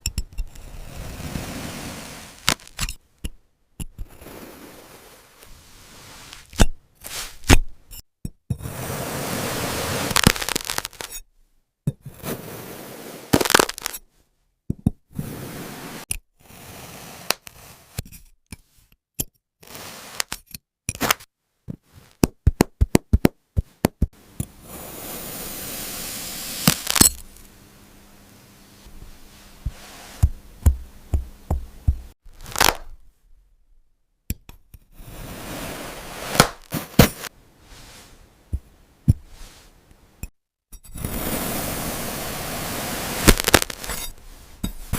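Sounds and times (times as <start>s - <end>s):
kinetic sand crunching: 1.0s - 2.9s, 9.0s - 11.1s, 12.3s - 14.0s, 25.5s - 27.3s, 29.2s - 32.9s, 35.3s - 38.2s, 41.2s - 44.6s
steady hiss: 24.3s - 31.0s, 41.2s - 44.6s.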